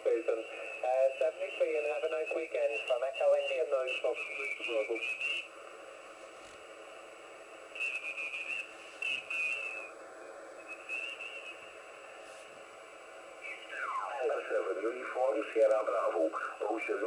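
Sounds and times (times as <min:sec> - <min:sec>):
radio receiver hiss: 0:00.0 - 0:17.0
faint warbling radio whistles: 0:00.1 - 0:05.5, 0:07.7 - 0:10.0, 0:10.6 - 0:11.8, 0:13.4 - 0:17.0.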